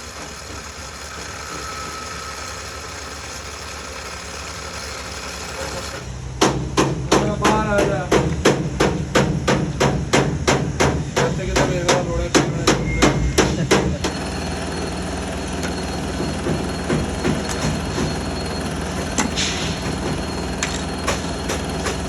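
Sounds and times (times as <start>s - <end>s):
running machine hum: 0.0s - 6.4s, 11.3s - 22.0s.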